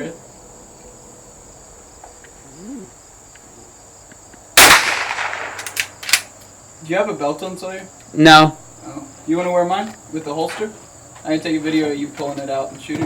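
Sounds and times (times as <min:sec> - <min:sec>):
crickets droning: 0:00.0 - 0:13.0
loud gunshot: 0:04.6 - 0:06.2.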